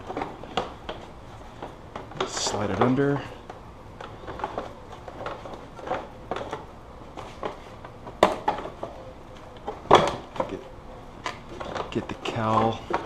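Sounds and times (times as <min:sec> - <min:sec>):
plastic pieces clattering: 0:11.2 - 0:13.0.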